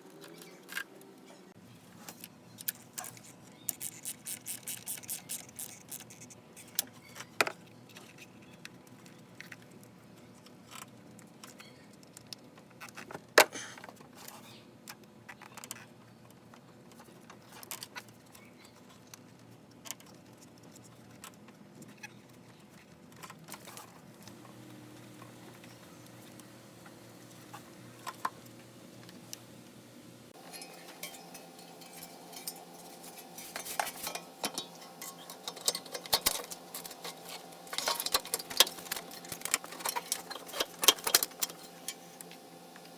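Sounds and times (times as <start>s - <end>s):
metallic clinks of hand tools: 30.4s - 36.6s.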